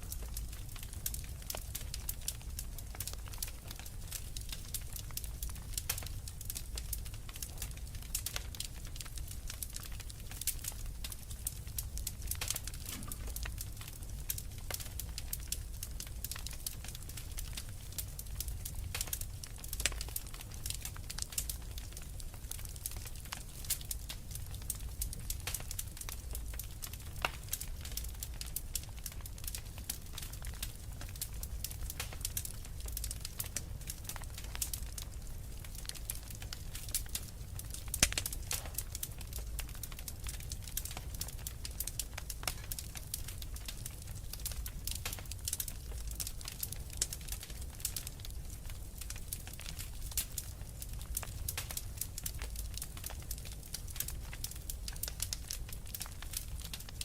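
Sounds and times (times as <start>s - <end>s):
fire crackling and popping: 0.0s - 57.0s.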